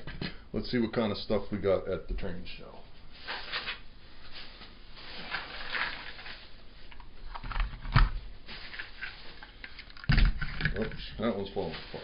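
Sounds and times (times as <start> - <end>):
objects rustling and clicking: 3.2 - 12.0.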